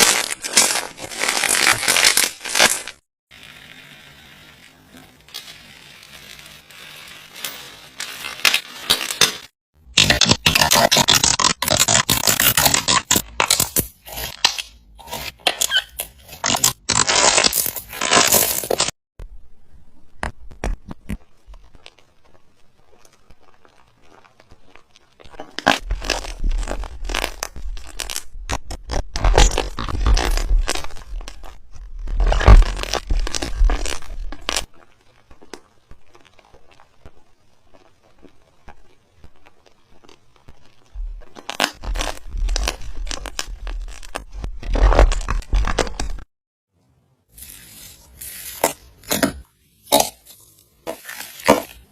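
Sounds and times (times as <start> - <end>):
slime crackling and popping: 20.2 - 46.3, 47.4 - 51.9.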